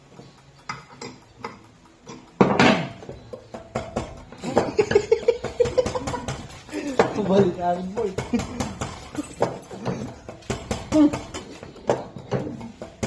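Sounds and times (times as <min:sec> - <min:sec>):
metal tools clinking: 0:06.4 - 0:08.1, 0:08.9 - 0:10.5.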